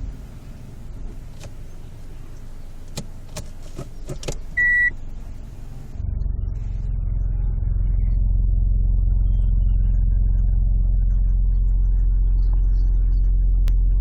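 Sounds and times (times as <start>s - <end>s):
car clicks: 0.2s - 4.9s
short electronic beep: 4.6s - 5.0s.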